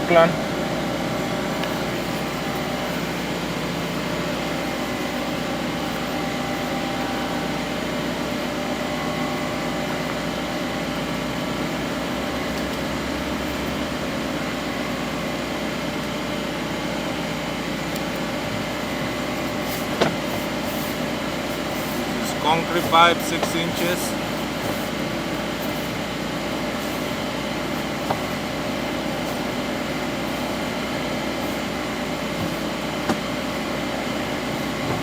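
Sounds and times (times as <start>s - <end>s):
steady machine hum: 0.0s - 35.0s.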